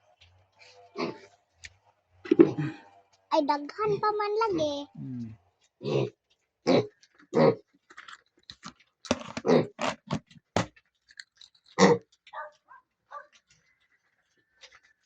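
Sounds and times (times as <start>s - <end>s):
piglet grunting while eating: 1.0s - 1.3s, 5.0s - 7.8s, 9.3s - 10.3s, 11.7s - 13.3s.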